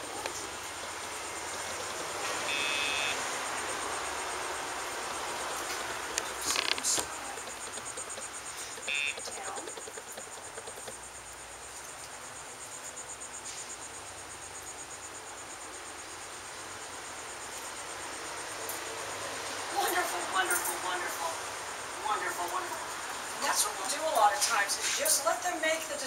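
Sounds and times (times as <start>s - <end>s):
crickets trilling: 0.0s - 26.0s
short buzzy tone: 2.5s - 3.2s, 8.8s - 9.2s.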